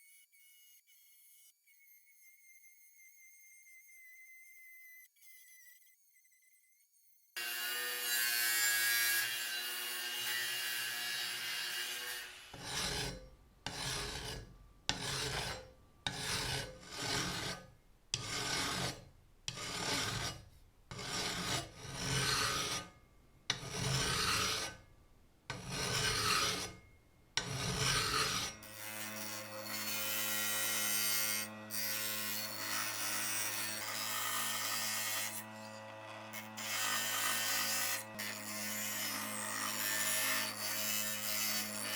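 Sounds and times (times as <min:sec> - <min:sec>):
hand filing strokes: 0:09.3 - 0:24.8, 0:25.5 - 0:26.8, 0:27.4 - 0:41.9.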